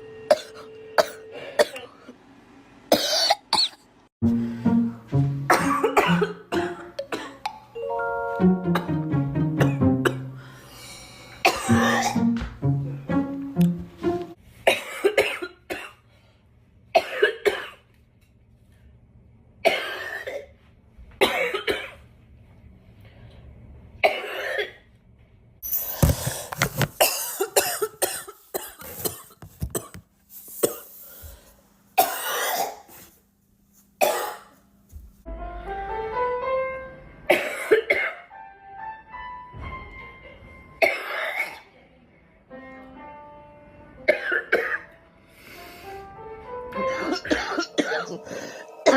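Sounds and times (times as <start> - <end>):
girl coughing: 0.3 - 2.0, 2.9 - 3.8, 5.5 - 7.6, 9.6 - 10.2, 11.4 - 12.2, 14.7 - 16.0, 17.0 - 17.8, 21.2 - 22.0, 24.0 - 24.8, 27.0 - 29.9, 32.0 - 32.9, 34.0 - 34.5, 37.3 - 38.2, 40.8 - 41.8, 44.1 - 44.8, 46.8 - 48.9
soft background music: 4.2 - 10.6, 11.4 - 14.4, 35.2 - 48.9.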